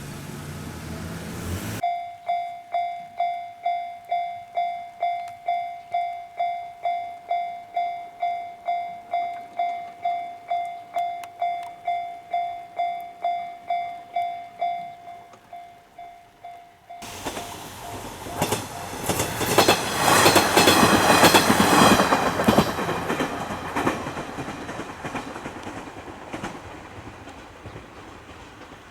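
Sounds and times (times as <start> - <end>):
level crossing warning bell: 1.8 - 24.5
train wheels clattering: 17.0 - 28.9.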